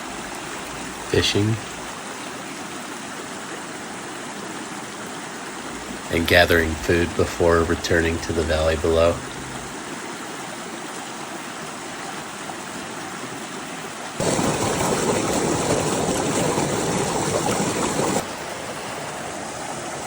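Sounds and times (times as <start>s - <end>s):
creek flowing over rocks: 0.0s - 20.0s.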